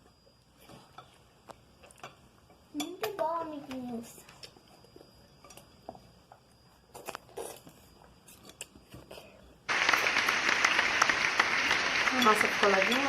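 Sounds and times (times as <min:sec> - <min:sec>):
loud applause: 0:09.7 - 0:13.0.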